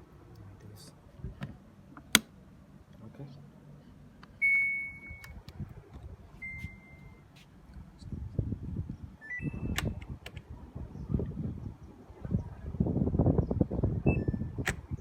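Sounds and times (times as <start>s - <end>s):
washing machine control panel beeping: 4.4s - 5.4s.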